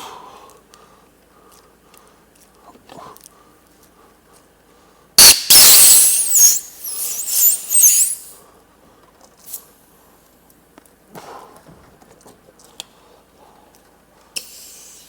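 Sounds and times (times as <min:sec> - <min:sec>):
rubber squealing: 0:05.2 - 0:08.2
compressed air blast: 0:05.2 - 0:08.3.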